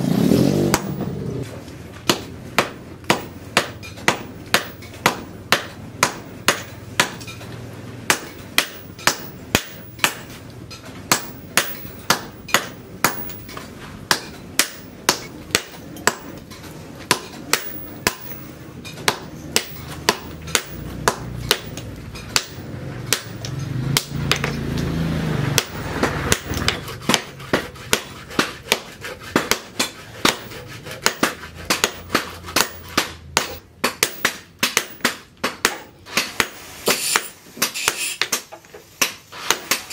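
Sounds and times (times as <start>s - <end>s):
hammer striking hot steel on anvil: 0.6s - 1.1s, 2.0s - 7.5s, 8.1s - 10.5s, 11.1s - 24.9s, 25.5s - 39.9s.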